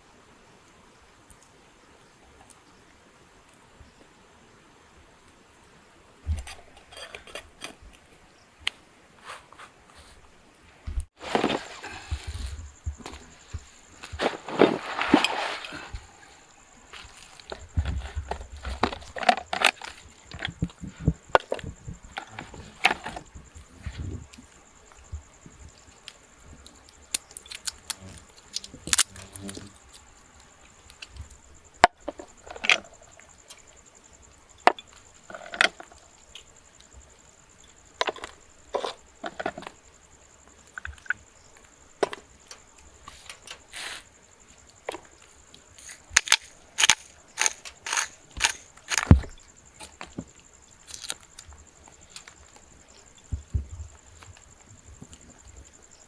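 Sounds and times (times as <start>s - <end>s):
high insect drone: 0.0s - 56.0s
wooden knocks and cracks: 46.1s - 51.2s.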